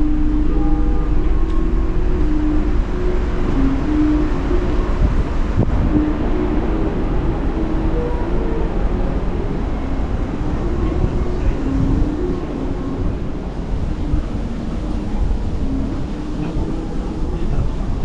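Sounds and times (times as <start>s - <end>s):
wind buffeting microphone: 1.2s - 18.0s.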